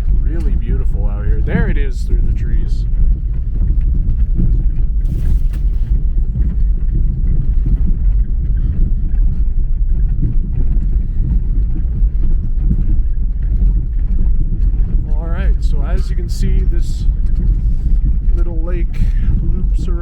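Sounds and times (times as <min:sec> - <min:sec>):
engine low rumble: 0:00.0 - 0:20.0.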